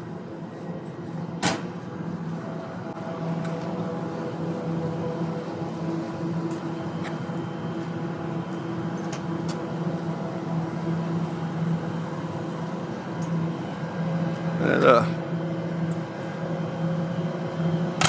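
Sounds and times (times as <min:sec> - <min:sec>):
train motors humming drone: 0:00.0 - 0:18.0
train rumble: 0:00.0 - 0:18.0.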